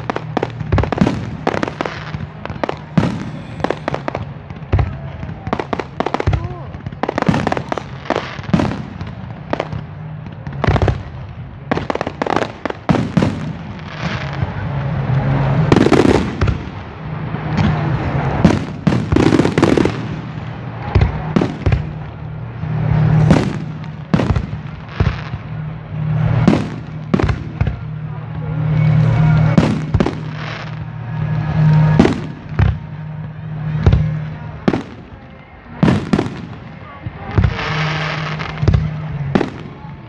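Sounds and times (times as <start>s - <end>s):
steady low hum: 0.0s - 4.7s
fireworks bangs and cracks: 0.0s - 40.0s.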